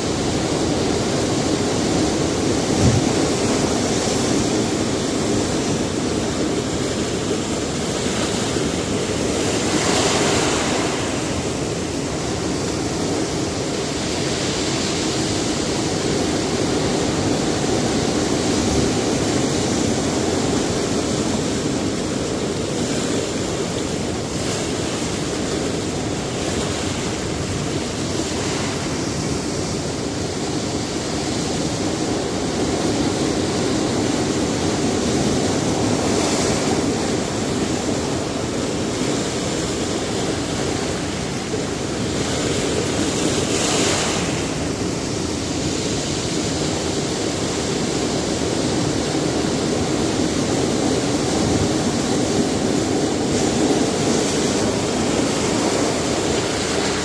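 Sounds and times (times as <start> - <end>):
surf breaking on rocky shore: 0.0 - 57.0.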